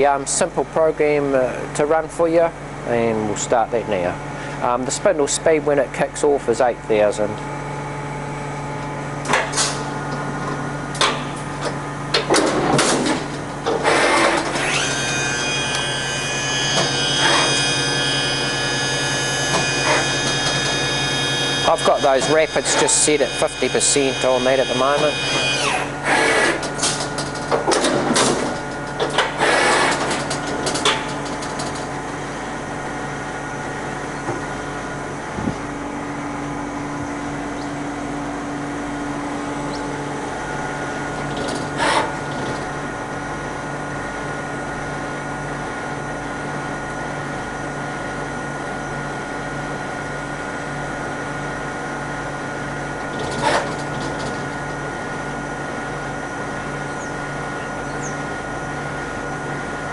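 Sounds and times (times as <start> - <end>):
machine spindle whine and hum: 0.0 - 59.9.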